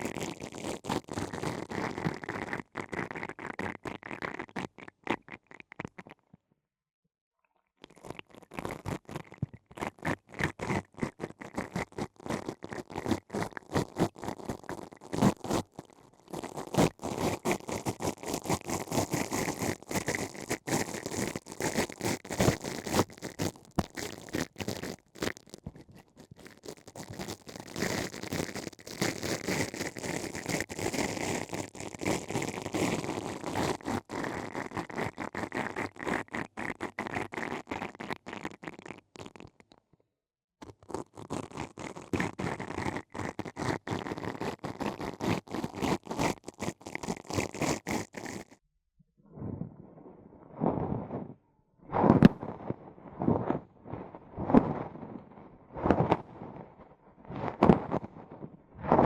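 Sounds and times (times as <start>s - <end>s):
tool scratching near microphone: 50.5s - 53.6s.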